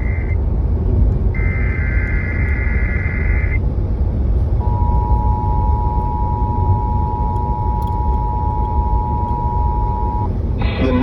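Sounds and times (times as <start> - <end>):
steady low rumble: 0.0 - 11.0
warbling data burst tones: 1.4 - 3.6
two-tone alert signal: 4.6 - 10.3.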